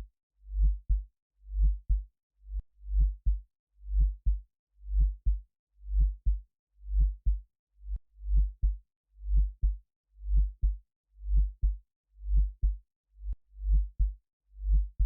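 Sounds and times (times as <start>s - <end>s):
synthesized heartbeat: 13.7s - 14.1s.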